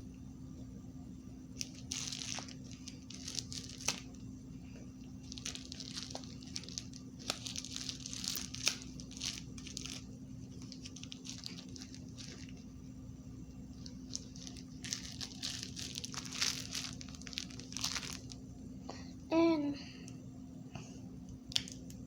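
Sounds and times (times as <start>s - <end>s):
plastic bag crinkling: 1.6s - 4.2s, 5.0s - 12.8s, 13.7s - 18.4s.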